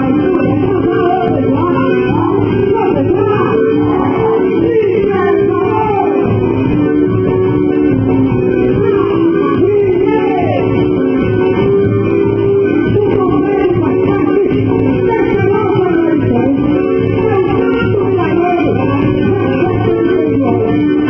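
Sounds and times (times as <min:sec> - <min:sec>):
person singing over guitar: 0:00.0 - 0:06.4
muffled dance music: 0:00.0 - 0:21.0.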